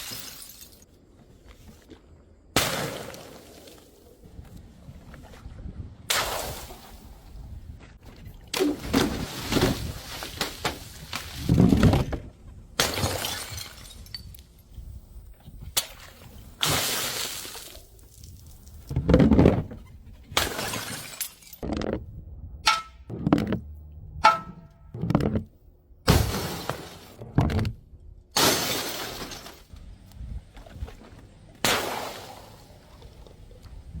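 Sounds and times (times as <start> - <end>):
glass bottles smashing: 0.0 - 0.8, 12.8 - 14.4, 20.4 - 21.6, 28.4 - 29.7.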